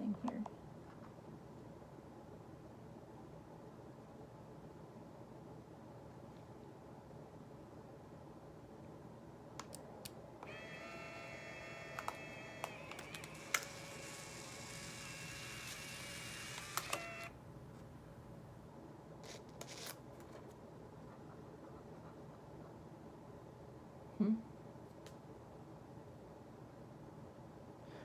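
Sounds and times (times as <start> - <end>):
instant camera motor whirring: 10.4 - 17.4.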